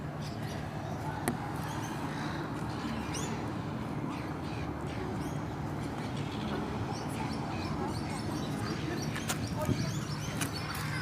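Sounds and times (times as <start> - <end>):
small birds chirping: 0.1 - 11.0.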